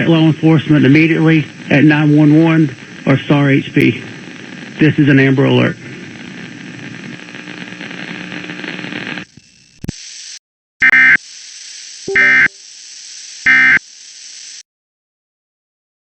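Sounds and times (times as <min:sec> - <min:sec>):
steady hiss: 0:00.0 - 0:09.2, 0:11.2 - 0:14.6
buzzy digital data bursts: 0:09.8 - 0:14.6.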